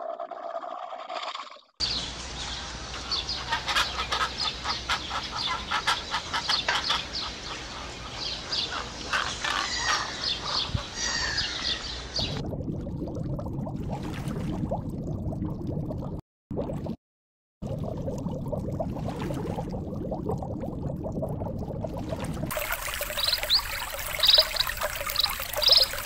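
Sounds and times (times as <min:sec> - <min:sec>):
birds chirping and clucking: 0:03.0 - 0:12.4.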